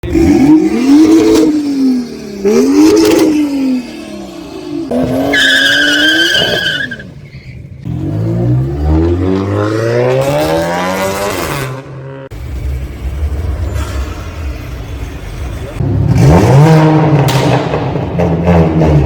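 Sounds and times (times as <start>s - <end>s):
car engine revving with cracks: 7.8s - 19.0s.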